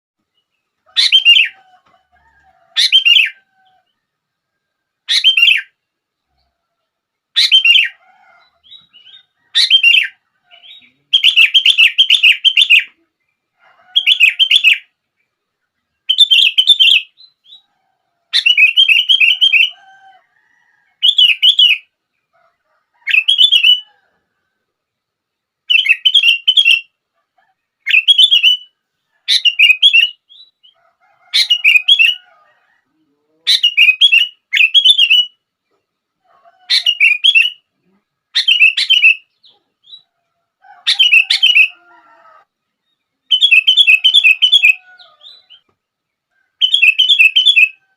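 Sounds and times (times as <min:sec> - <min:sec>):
bulbul singing: 0:00.4 - 0:01.6, 0:05.1 - 0:05.8, 0:07.4 - 0:13.0, 0:18.4 - 0:19.8, 0:25.7 - 0:27.0, 0:27.8 - 0:30.8, 0:33.5 - 0:35.4, 0:36.8 - 0:37.7, 0:38.3 - 0:40.1, 0:40.9 - 0:41.8, 0:43.3 - 0:45.7, 0:46.6 - 0:47.8.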